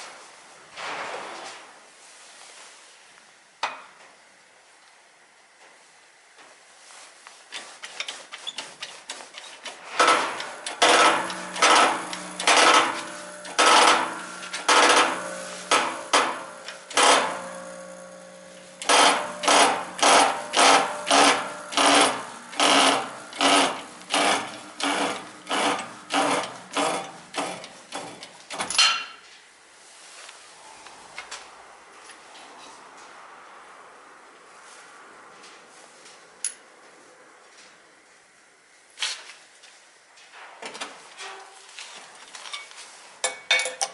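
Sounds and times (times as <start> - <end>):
hammer blows on ringing metal: 10.1 - 27.7.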